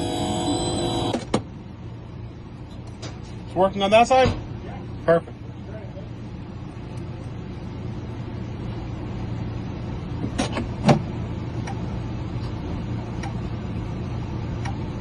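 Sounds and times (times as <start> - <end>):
low engine hum: 4.3 - 15.0.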